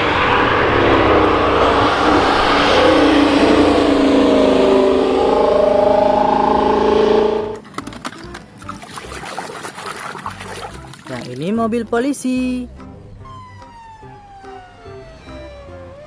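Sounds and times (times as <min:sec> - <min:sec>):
racing car engine revving: 0:00.0 - 0:07.6.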